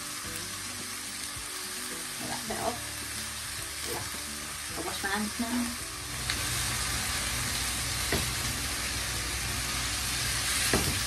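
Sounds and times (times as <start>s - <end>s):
meat sizzling in a frying pan: 0.0s - 11.0s.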